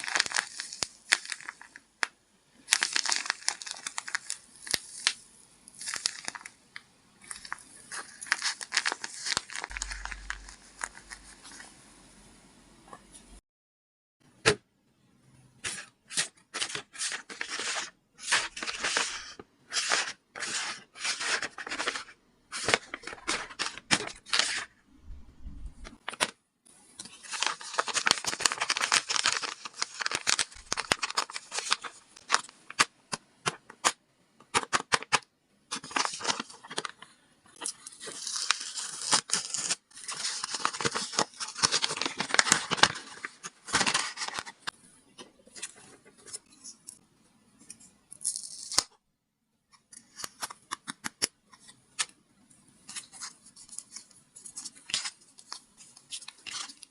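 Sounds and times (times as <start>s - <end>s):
paper rustling and tearing: 0.0s - 1.6s, 7.3s - 11.6s, 15.6s - 24.7s, 27.0s - 32.9s, 34.6s - 37.0s, 37.6s - 44.7s, 52.9s - 56.9s
paper crinkling: 0.0s - 1.8s, 2.7s - 5.2s, 7.2s - 11.8s, 15.6s - 24.7s, 27.0s - 47.0s, 52.8s - 56.9s.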